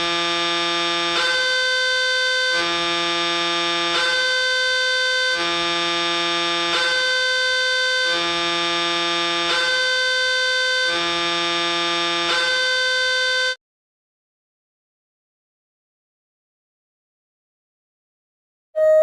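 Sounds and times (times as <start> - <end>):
level-crossing two-tone alarm: 0.0 - 13.6, 18.8 - 19.0.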